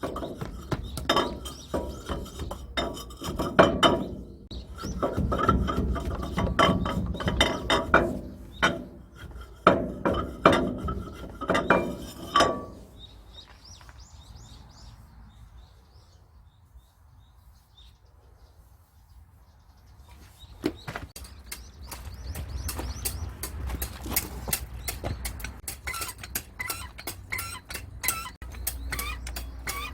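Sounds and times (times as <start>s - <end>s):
hammer knocking on metal: 0.0s - 12.8s
birds chirping faintly: 0.0s - 29.9s.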